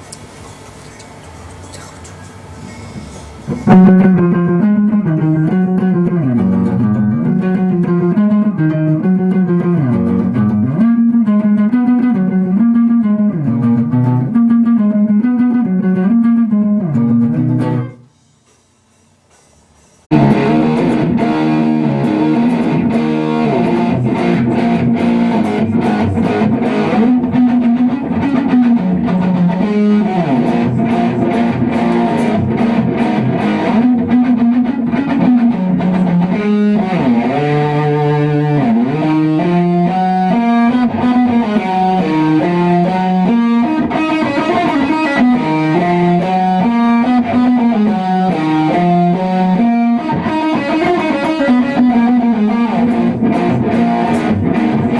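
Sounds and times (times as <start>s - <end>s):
distorted electric guitar: 1.6s - 18.1s, 20.1s - 54.9s
bass line: 3.5s - 11.2s, 20.1s - 34.2s.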